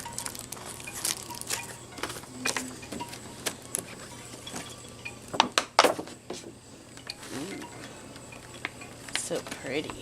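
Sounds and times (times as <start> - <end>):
packaging clicks: 0.0 - 2.6
packaging rustling: 0.0 - 3.9.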